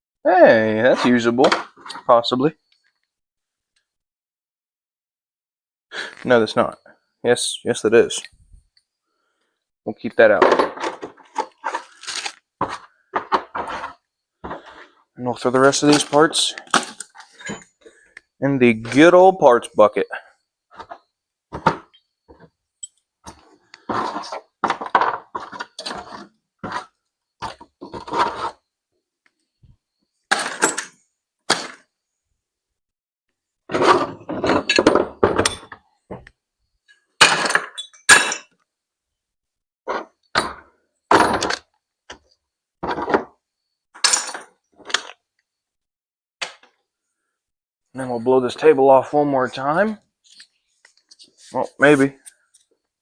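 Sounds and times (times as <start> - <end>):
metal parts clattering into bucket: 10.4 - 14.6, 33.7 - 35.8, 44.0 - 45.1.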